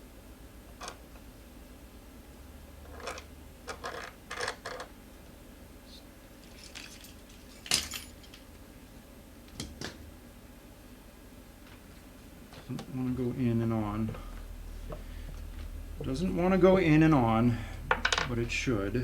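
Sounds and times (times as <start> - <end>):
metallic clinks and knocks: 6.5 - 8.4.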